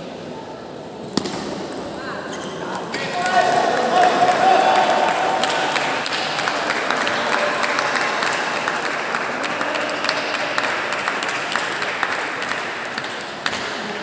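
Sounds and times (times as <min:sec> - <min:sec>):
audience applauding: 0:03.0 - 0:14.0.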